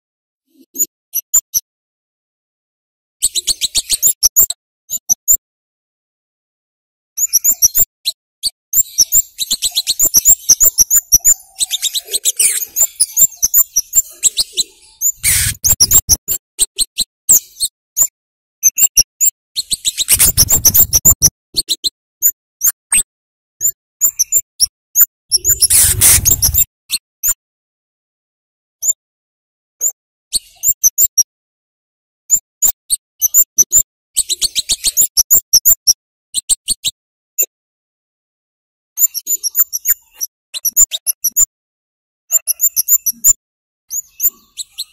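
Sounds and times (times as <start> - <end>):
bird calling high chips: 8.9 - 16.2, 25.3 - 26.6
rushing noise bursts: 25.6 - 26.6.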